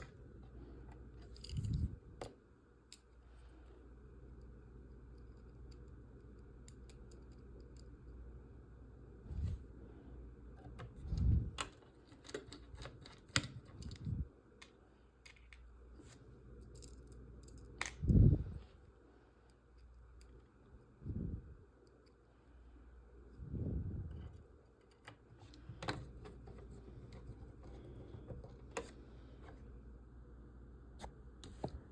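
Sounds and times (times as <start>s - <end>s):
light clicks of small pieces: 4.3s - 8.2s.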